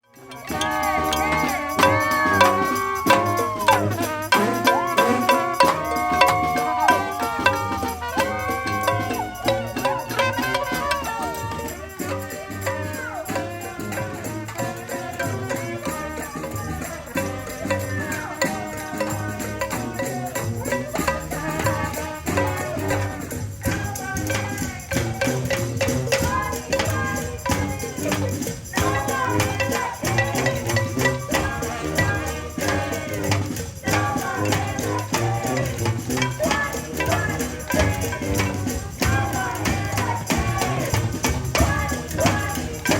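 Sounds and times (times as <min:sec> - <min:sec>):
drums keeping a beat: 0:00.0 - 0:42.9
shaker rattling: 0:00.0 - 0:42.9.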